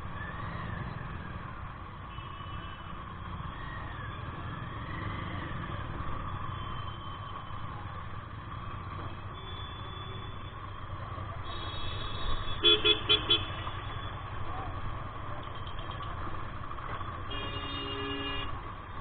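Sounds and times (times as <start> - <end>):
motorcycle engine and road noise: 0.0 - 19.0
vehicle horn beeping: 11.5 - 13.8, 17.3 - 18.6.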